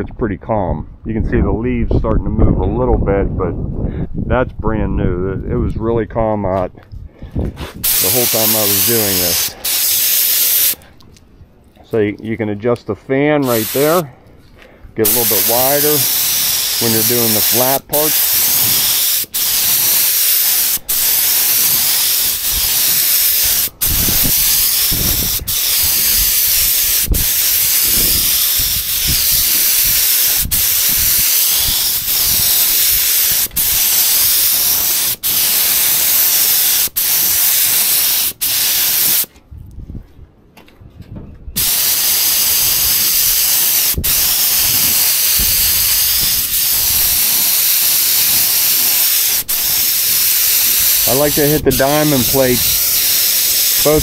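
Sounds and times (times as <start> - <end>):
spray gun hissing: 7.8 - 10.8, 13.4 - 14.0, 15.0 - 39.3, 41.6 - 54.0.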